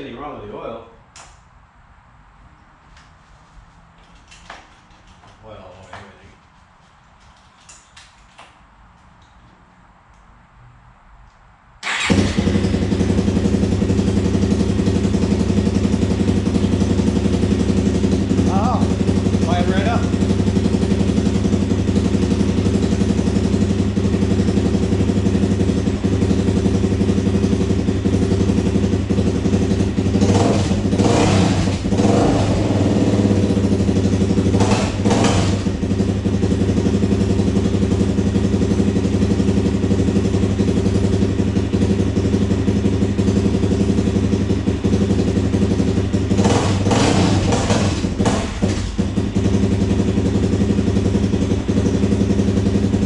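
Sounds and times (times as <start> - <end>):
atv engine idling and revving: 11.9 - 53.0.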